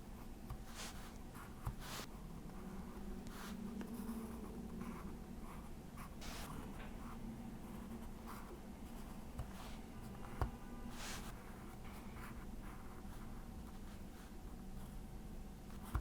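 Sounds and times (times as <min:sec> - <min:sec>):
steady low hum: 0:00.0 - 0:16.0
pencil scratching on paper: 0:00.5 - 0:15.0.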